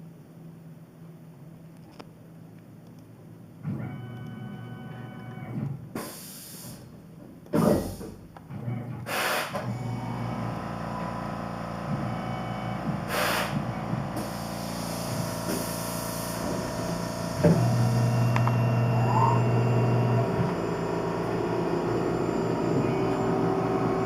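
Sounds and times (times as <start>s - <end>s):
hissing spray bursts: 9.1s - 9.6s, 13.1s - 13.6s, 14.2s - 16.6s
milling machine whine: 9.6s - 24.0s.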